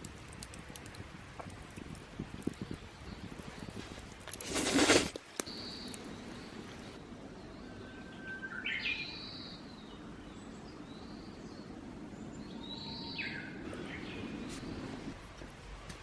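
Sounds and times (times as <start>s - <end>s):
low background noise: 0.0s - 16.0s
woodpecker singing: 5.4s - 15.1s.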